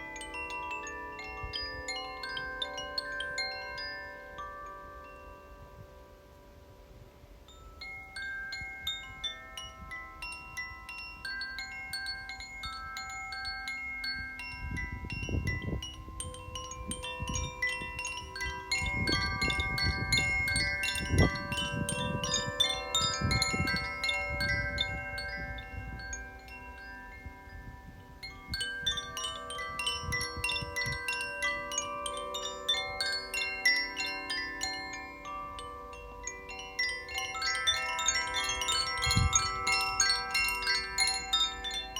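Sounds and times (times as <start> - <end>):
wind chimes ringing: 0.0 - 41.9.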